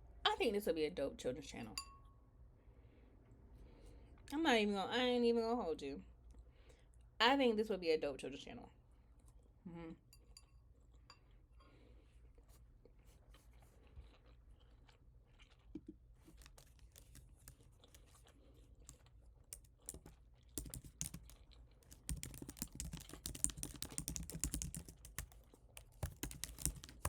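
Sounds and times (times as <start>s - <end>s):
typing on computer keyboard: 16.3s - 17.6s, 18.9s - 27.0s.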